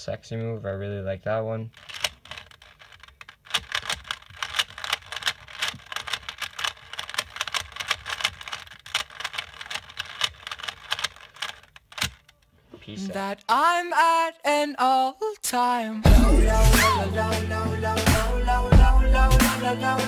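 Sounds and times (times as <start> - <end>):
puzzle cube layers clicking: 1.8 - 12.4.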